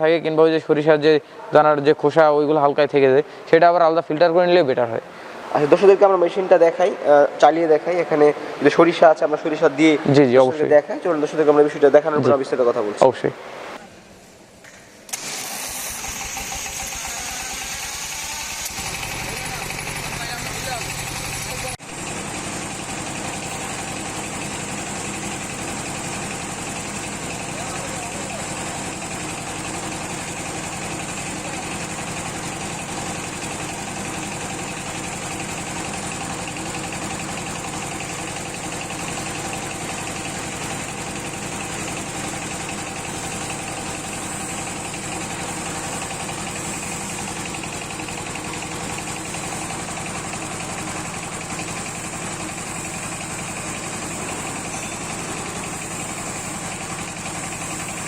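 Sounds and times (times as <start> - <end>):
oil pressing machine droning: 15.1 - 58.0.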